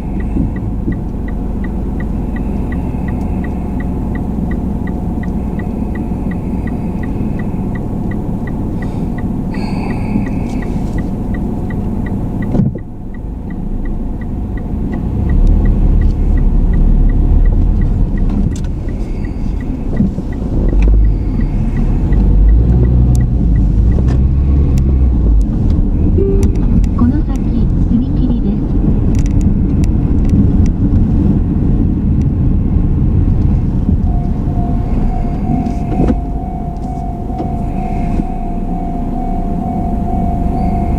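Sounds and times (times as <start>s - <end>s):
faint even ticking: 0.0s - 25.5s, 34.0s - 40.9s
car engine and road rumble: 0.0s - 40.9s.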